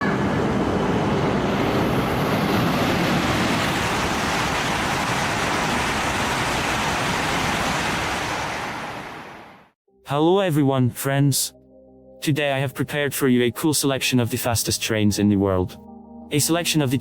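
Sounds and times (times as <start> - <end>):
rushing vehicle noise: 0.0 - 9.2.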